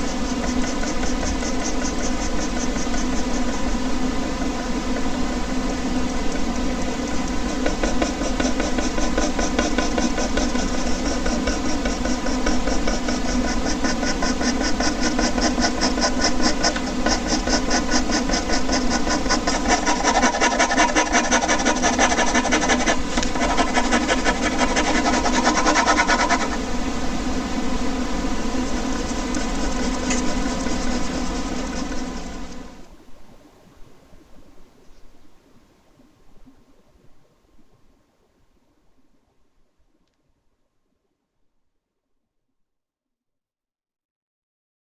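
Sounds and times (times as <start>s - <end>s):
ballpoint pen scratching paper: 0.0s - 3.6s, 7.3s - 26.6s, 28.7s - 32.7s.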